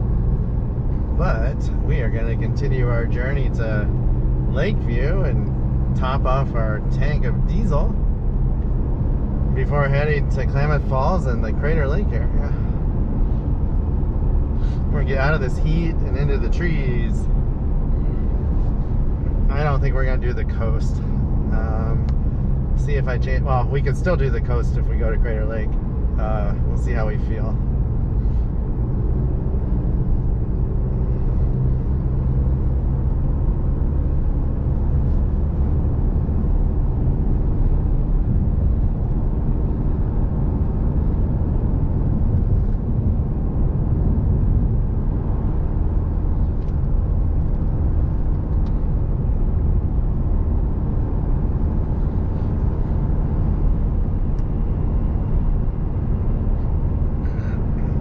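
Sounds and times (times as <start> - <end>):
diesel engine drone: 0.0 - 58.0
tyres on the road: 0.0 - 58.0.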